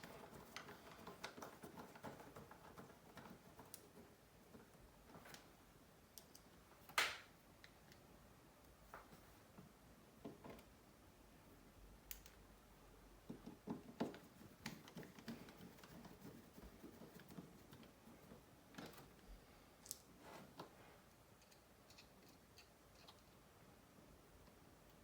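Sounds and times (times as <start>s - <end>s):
small parts and tools clicking: 21.4s - 23.4s.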